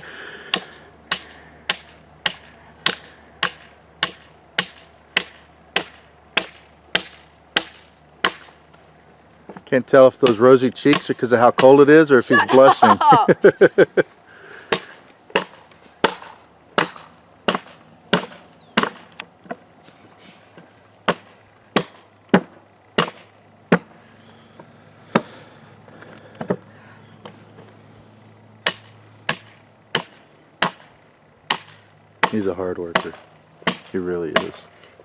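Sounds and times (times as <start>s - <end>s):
hand tool chopping wood: 0.5s - 8.6s, 10.2s - 11.8s, 14.7s - 19.6s, 21.0s - 23.9s, 25.1s - 25.4s, 28.6s - 30.9s, 31.5s - 34.7s.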